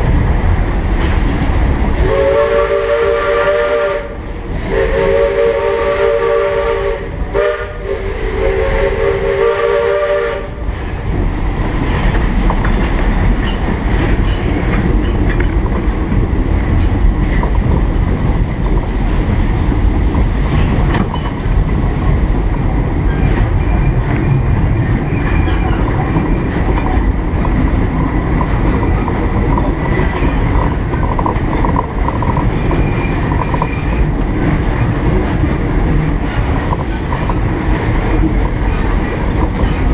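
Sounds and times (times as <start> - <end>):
train rumbling along track: 0.0 - 39.9
steam whistle blasts: 2.0 - 10.6.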